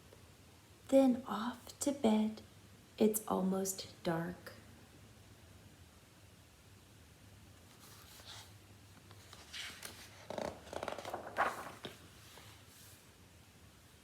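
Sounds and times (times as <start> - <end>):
paper page rustling: 7.6 - 13.0.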